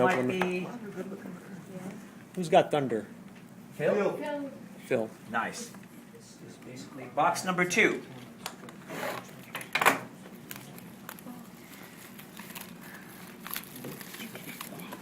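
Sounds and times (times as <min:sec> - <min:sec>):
plastic wrapping crinkling and tearing: 0:10.4 - 0:15.0.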